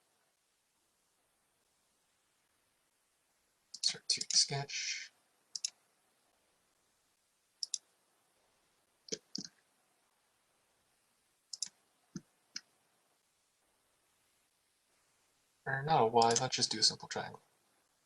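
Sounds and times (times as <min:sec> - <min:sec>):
computer mouse clicking: 0:03.7 - 0:04.5, 0:05.5 - 0:05.8, 0:07.6 - 0:07.9, 0:09.1 - 0:09.6, 0:11.5 - 0:12.7, 0:16.2 - 0:16.5.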